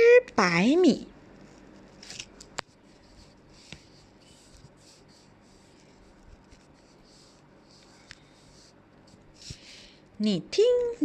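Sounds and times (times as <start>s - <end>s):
light scratching on paper: 1.3s - 9.8s.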